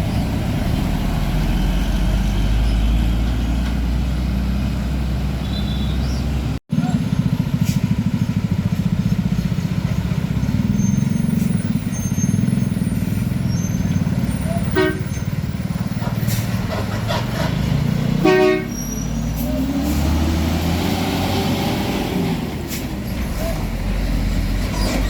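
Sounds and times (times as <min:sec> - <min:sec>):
heavy truck engine rumbling: 0:00.0 - 0:25.0
horn tooting: 0:14.4 - 0:15.4, 0:18.2 - 0:19.0.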